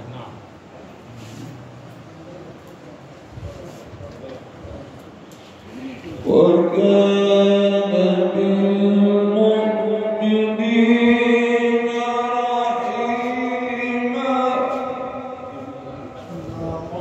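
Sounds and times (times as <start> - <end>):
man chanting: 6.0 - 17.0.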